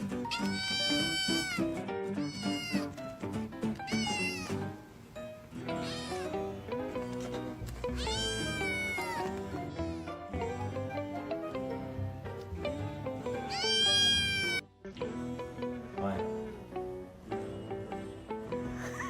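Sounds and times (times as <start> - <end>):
background music: 0.0 - 19.0
cat meowing: 0.2 - 3.0, 3.8 - 4.8, 5.7 - 6.5, 7.9 - 10.2, 13.4 - 14.6.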